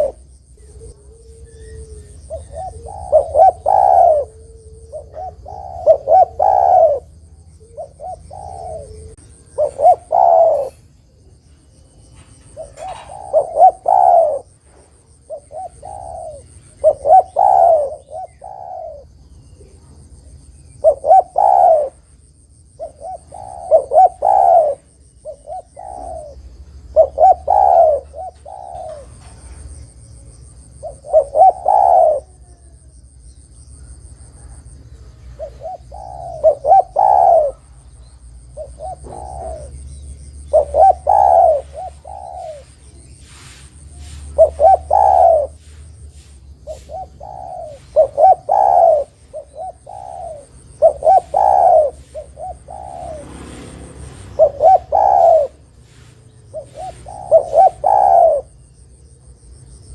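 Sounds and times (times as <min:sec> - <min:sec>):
dove cooing: 0:00.0 - 0:59.9.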